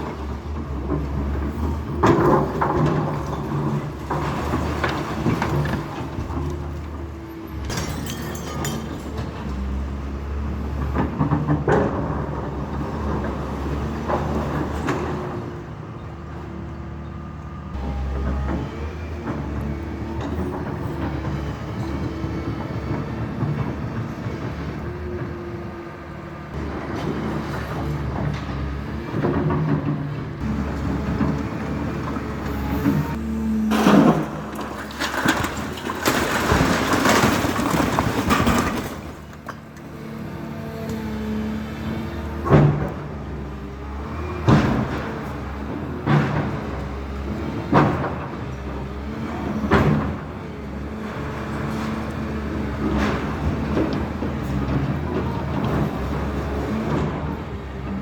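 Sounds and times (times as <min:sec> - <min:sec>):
debris crunching and clattering: 0:00.0 - 0:15.4, 0:26.6 - 0:40.2
clanks and knocks: 0:00.0 - 0:15.6, 0:26.5 - 0:57.9
demolition machinery diesel drone: 0:00.0 - 0:58.0.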